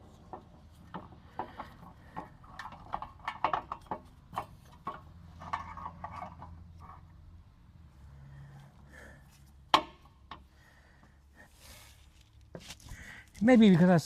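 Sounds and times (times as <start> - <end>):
tools clicking and knocking: 0.2 - 7.0, 9.7 - 10.5.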